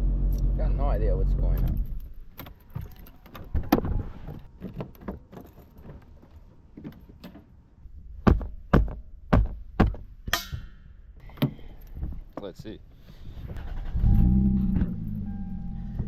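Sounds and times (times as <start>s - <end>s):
heavy thumps: 8.2s - 13.6s.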